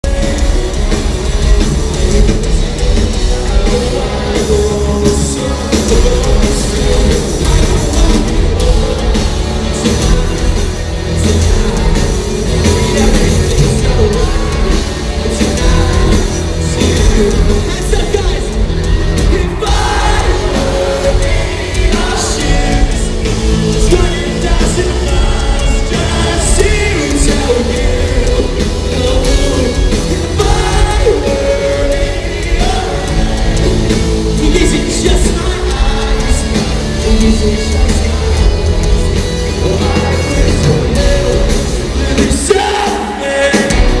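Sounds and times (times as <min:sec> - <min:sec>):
lead vocal singing: 0:00.0 - 0:44.0
live rock band playing: 0:00.0 - 0:44.0.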